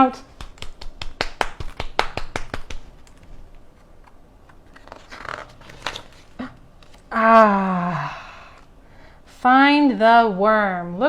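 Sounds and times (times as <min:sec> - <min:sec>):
quick hand clapping: 0:00.2 - 0:03.2
paper rustling: 0:00.2 - 0:07.1
woman saying ooh: 0:07.1 - 0:08.4.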